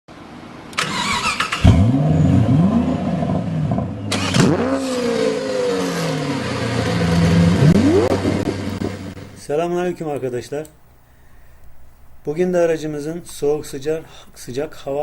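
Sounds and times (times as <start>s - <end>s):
car engine cranking and starting: 0.7s - 9.4s
car engine revving and idling: 1.6s - 9.4s.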